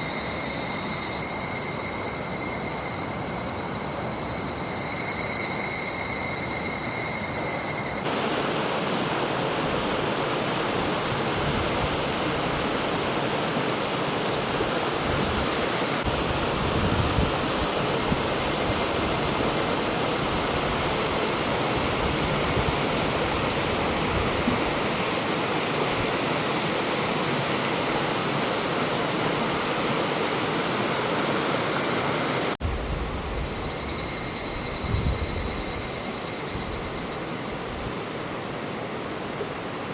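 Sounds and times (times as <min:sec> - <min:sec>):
cicadas calling: 0:00.0 - 0:08.1, 0:10.6 - 0:16.2, 0:17.4 - 0:25.2, 0:26.6 - 0:39.1
stream rushing over rocks: 0:08.0 - 0:17.9.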